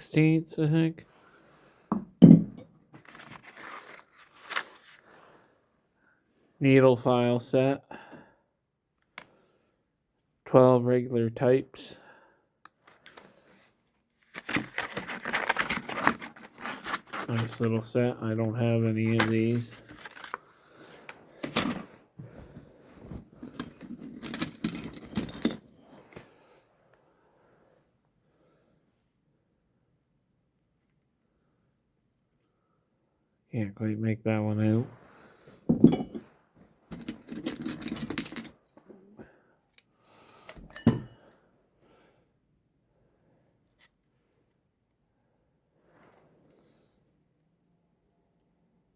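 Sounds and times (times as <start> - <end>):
metal hand tools clinking: 23.4 - 25.7, 36.9 - 38.6, 40.7 - 41.4
ringing metal-on-metal clink: 40.7 - 41.5.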